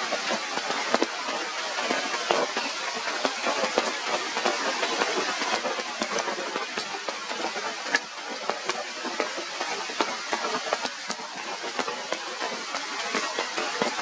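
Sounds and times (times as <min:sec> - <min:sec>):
raindrops tapping surfaces: 0:00.3 - 0:01.1, 0:03.2 - 0:07.0.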